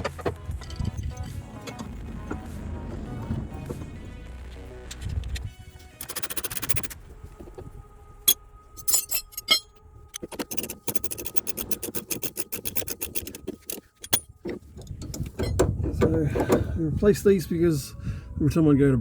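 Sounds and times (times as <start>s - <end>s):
metal clinks: 0.1s - 1.8s, 6.0s - 7.0s, 8.3s - 16.7s
socket ratchet clicking: 6.0s - 7.0s, 8.8s - 16.7s
tool scraping metal: 6.0s - 7.0s, 8.3s - 16.7s.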